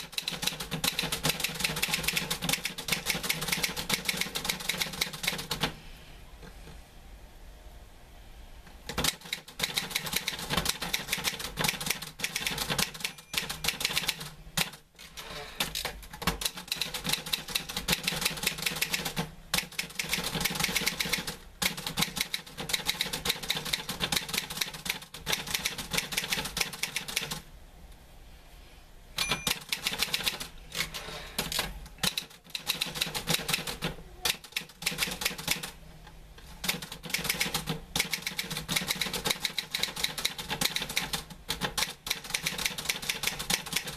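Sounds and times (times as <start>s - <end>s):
typewriter typing: 0.0s - 5.8s, 8.9s - 27.4s, 29.2s - 35.8s, 36.6s - 43.9s.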